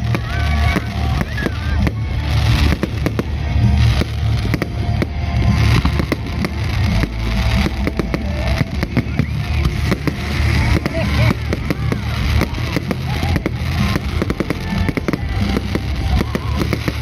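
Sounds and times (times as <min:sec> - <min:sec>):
fireworks bangs and crackles: 0:00.0 - 0:17.0
low rumble: 0:00.0 - 0:17.0.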